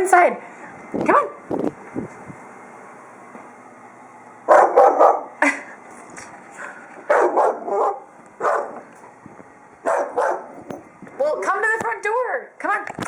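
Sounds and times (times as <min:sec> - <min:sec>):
puppy barking: 0:04.5 - 0:05.4, 0:07.1 - 0:08.9, 0:09.8 - 0:10.6.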